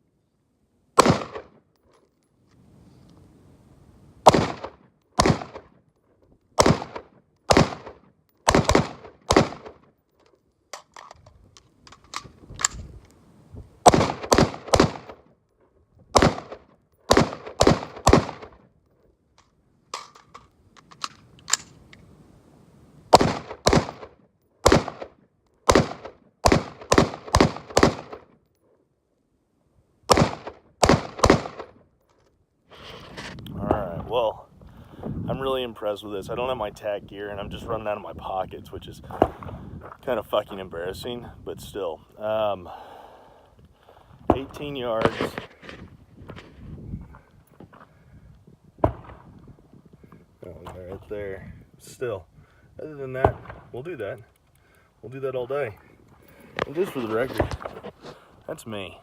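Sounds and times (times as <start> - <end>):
rifle gunshots: 1.0 - 1.6, 4.2 - 5.8, 6.6 - 9.9, 13.8 - 15.2, 16.2 - 18.6, 23.1 - 28.3, 30.1 - 31.8
wind rumbling on microphone: 11.1 - 15.1, 32.8 - 42.6, 43.5 - 54.3.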